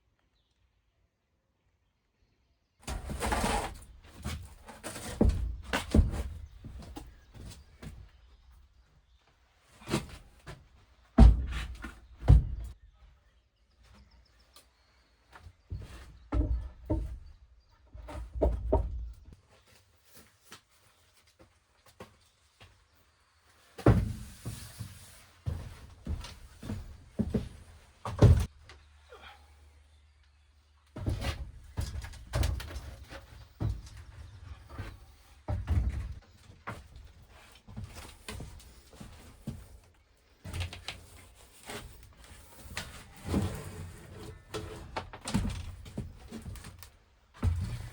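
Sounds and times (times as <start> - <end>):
irregular thuds and knocks: 2.9 - 8.1, 11.2 - 12.8, 15.6 - 19.4, 23.8 - 24.6, 25.5 - 28.6, 31.0 - 39.8.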